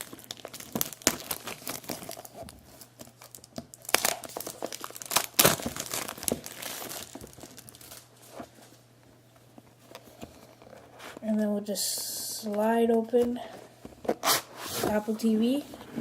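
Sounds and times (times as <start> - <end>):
plastic shrink-wrap tearing and crinkling: 0.0 - 8.4.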